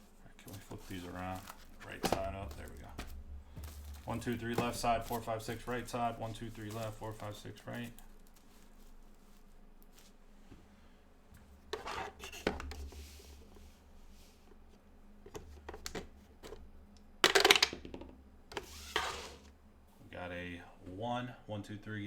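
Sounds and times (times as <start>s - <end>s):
low steady hum: 0.0s - 22.0s
dice rattling in a roller: 17.2s - 18.1s.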